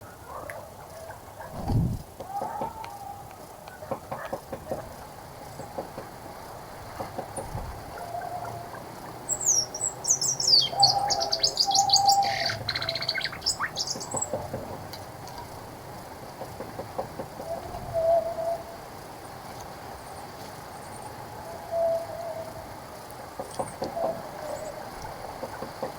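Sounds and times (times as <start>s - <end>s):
songbird chirping and trilling: 7.0s - 15.5s
low whistled bird notes: 9.3s - 14.3s.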